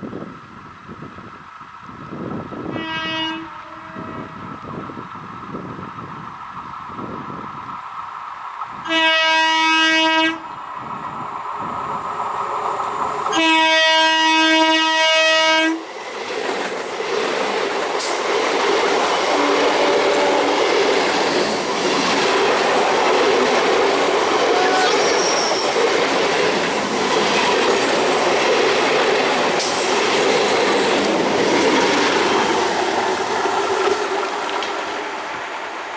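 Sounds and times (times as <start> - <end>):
train rumbling past on rails: 0.0 - 35.9
electric train horn: 2.6 - 4.6, 8.8 - 10.6, 13.3 - 15.9, 19.1 - 20.9.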